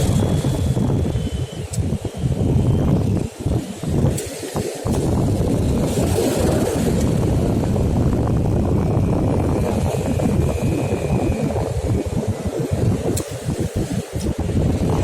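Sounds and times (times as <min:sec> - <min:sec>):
loud low rumbling: 0:04.9 - 0:15.0.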